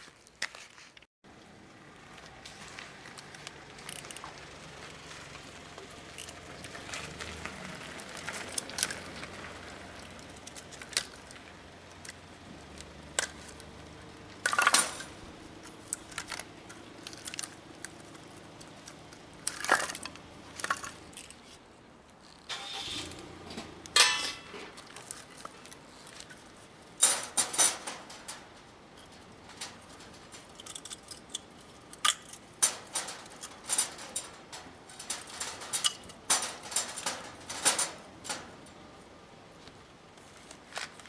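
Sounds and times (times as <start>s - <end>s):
firewood and metal knocking: 14.4s - 17.5s, 23.5s - 25.2s, 27.0s - 38.8s
metal clattering: 14.4s - 21.4s, 22.5s - 25.6s, 26.9s - 38.8s.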